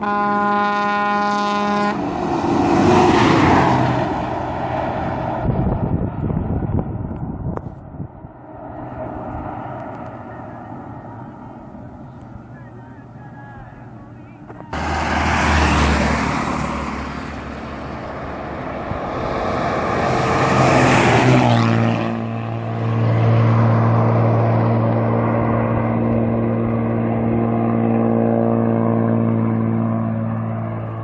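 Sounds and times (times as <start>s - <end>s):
bus diesel engine running: 0.0s - 31.0s
loud rushing noise: 1.9s - 7.0s, 14.6s - 27.3s.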